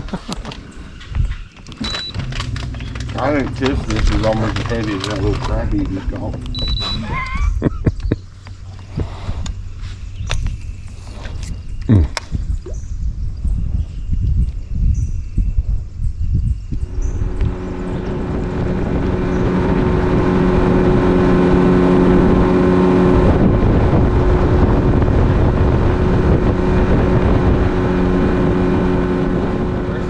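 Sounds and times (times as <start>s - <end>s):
wind buffeting microphone: 0.0s - 30.0s
boat motor running: 1.5s - 11.6s, 16.8s - 30.0s.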